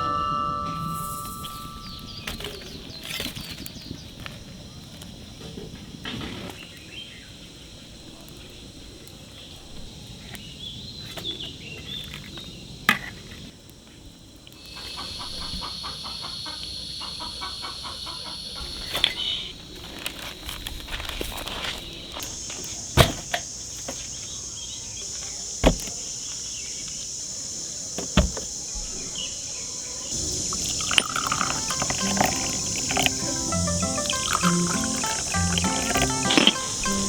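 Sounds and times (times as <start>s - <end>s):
birds chirping: 0.0s - 4.3s, 27.9s - 37.0s
high insect-like whine: 0.0s - 10.9s, 14.2s - 37.0s.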